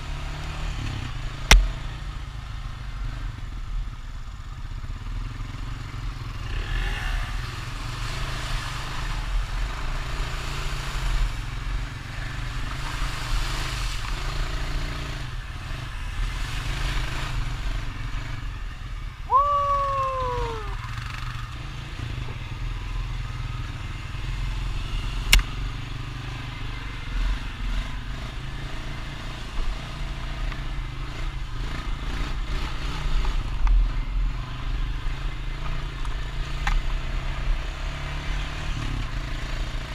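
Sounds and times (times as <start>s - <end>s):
sharp click: 1.5s - 1.7s, 25.3s - 25.5s.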